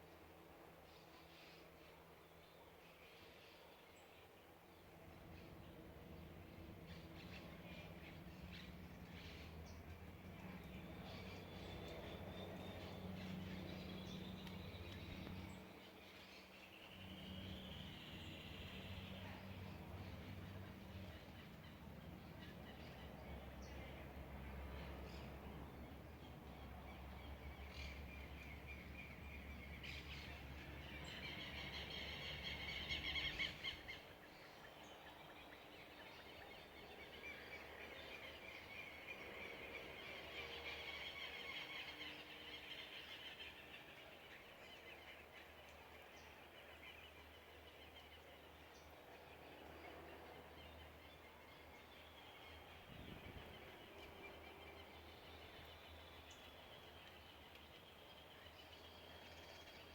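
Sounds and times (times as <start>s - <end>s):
birds singing with trills: 26.5s - 48.9s.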